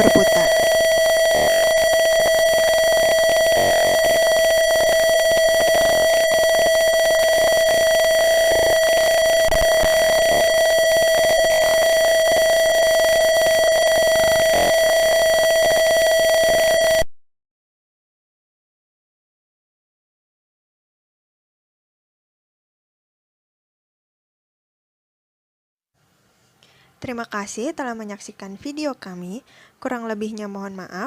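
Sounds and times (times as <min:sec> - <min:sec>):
buzzer steady tone: 0:00.0 - 0:17.1.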